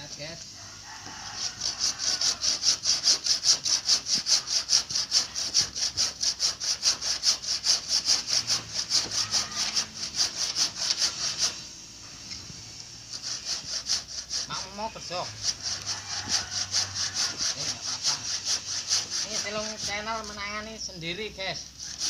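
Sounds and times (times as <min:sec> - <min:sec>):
hand saw cutting bamboo: 0:01.0 - 0:11.7, 0:13.0 - 0:20.7, 0:21.6 - 0:22.0.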